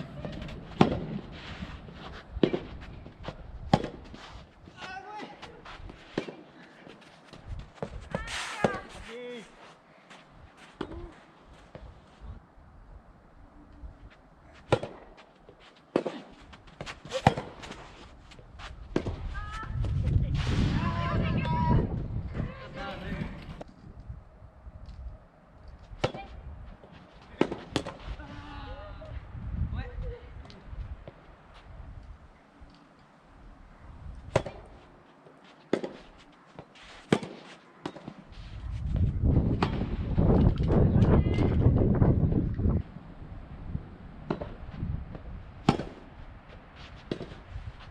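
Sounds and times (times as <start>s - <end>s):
tennis balls struck by rackets: 0.0s - 1.3s, 2.4s - 4.2s, 5.2s - 9.0s, 10.7s - 11.9s, 14.6s - 17.9s, 18.9s - 19.3s, 25.9s - 28.2s, 34.2s - 35.0s, 35.6s - 38.3s, 44.2s - 46.2s, 47.0s - 47.4s
tennis racket hitting ball: 3.7s - 4.2s, 15.9s - 17.9s, 35.7s - 36.2s, 37.0s - 38.2s, 45.6s - 46.1s
wind rumble on microphone: 18.1s - 32.7s, 33.3s - 34.8s, 38.3s - 47.9s.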